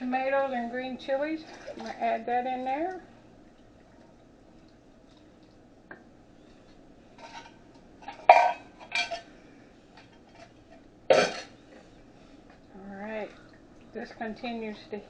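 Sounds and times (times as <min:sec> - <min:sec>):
utensil clanking on metal: 0:07.2 - 0:09.3.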